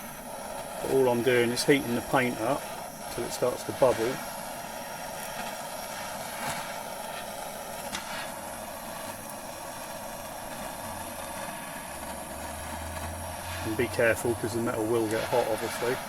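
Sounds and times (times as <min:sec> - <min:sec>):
blowtorch flame hissing: 0:00.0 - 0:16.0.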